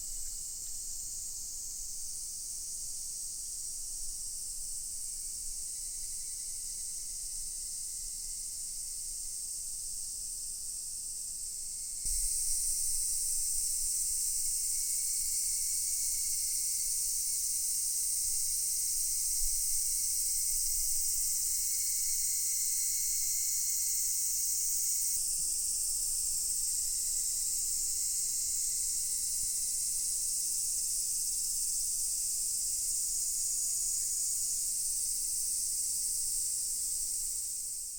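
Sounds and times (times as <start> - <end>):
cicadas buzzing: 4.5 - 8.4, 11.8 - 37.9.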